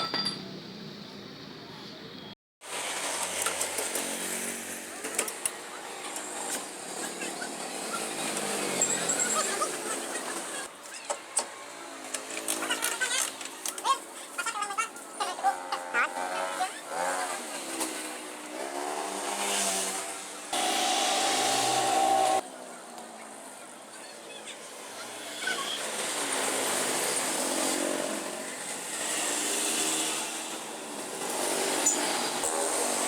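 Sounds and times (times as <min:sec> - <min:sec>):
scooter engine revving: 0:02.8 - 0:10.7, 0:15.3 - 0:22.4, 0:24.8 - 0:33.0.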